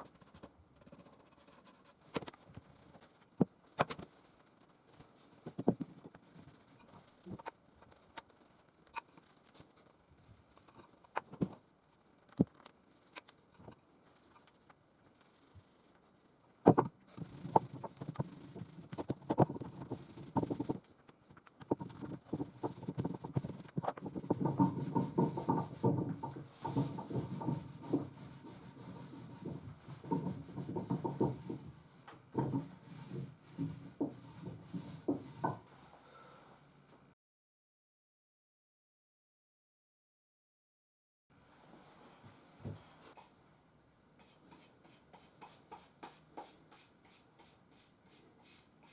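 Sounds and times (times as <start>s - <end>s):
hand rubbing on a workpiece: 5.0s - 11.1s, 17.1s - 20.8s, 21.7s - 35.9s, 44.2s - 48.9s.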